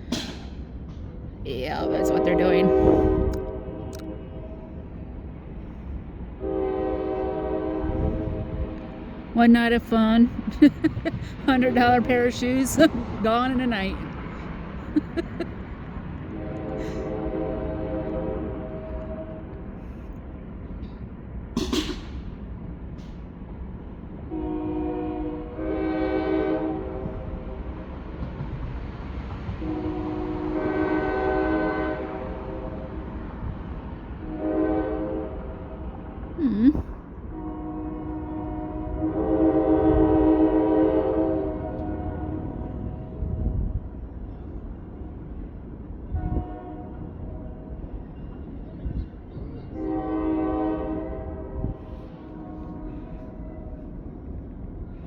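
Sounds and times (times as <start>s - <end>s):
distant train horn blasts: 1.7s - 5.1s, 6.4s - 9.3s, 16.2s - 19.9s, 24.2s - 27.9s, 29.5s - 33.2s, 34.2s - 36.0s, 37.2s - 43.2s, 46.1s - 47.8s, 49.7s - 53.8s.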